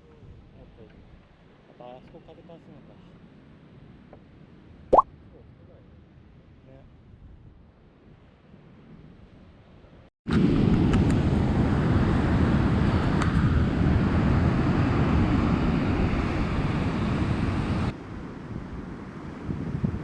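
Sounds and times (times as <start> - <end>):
wind buffeting microphone: 10.4 - 20.0.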